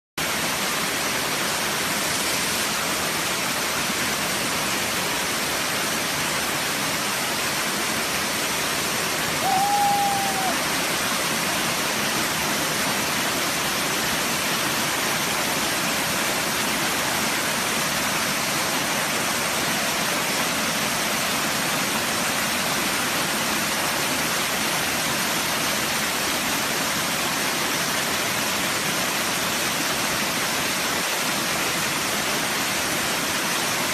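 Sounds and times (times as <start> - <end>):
waterfall pouring: 0.2 - 33.9
short whistled note: 9.4 - 10.6.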